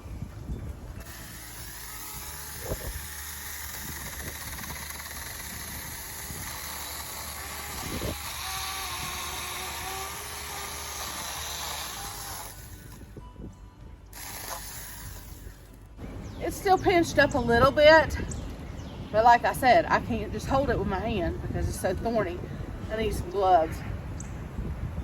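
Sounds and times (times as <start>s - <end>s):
mini chainsaw cutting wood: 1.0s - 13.2s, 14.2s - 15.8s.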